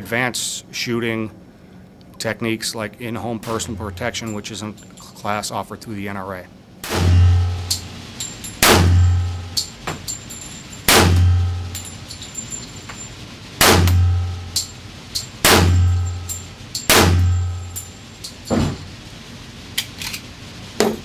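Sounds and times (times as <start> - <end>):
light metallic clinks: 3.5 - 5.2, 7.4 - 13.3, 14.1 - 18.6
loud pistol shots echoing: 6.8 - 8.0, 8.6 - 9.6, 10.9 - 11.8, 13.6 - 14.4, 15.4 - 16.1, 16.9 - 17.6.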